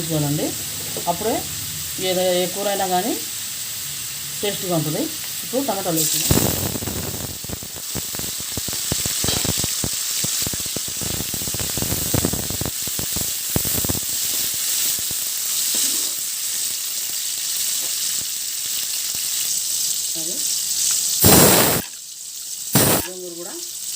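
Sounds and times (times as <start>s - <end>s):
onions and tomatoes sizzling in oil: 0.0s - 23.9s.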